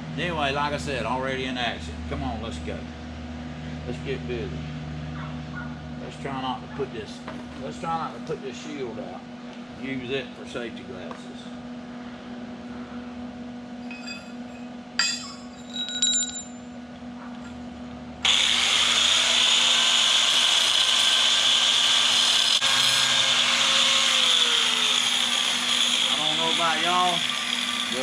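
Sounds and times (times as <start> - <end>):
metallic clinks: 13.8 - 16.8
angle grinder cutting steel: 18.2 - 28.0.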